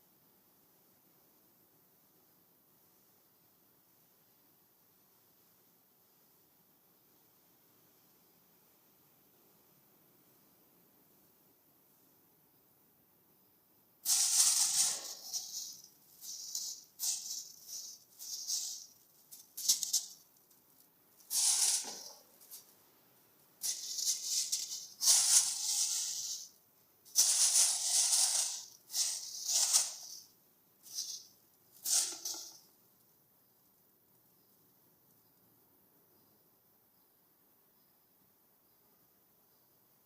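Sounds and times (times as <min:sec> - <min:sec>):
plastic crinkling and rustling: 0:14.1 - 0:22.8.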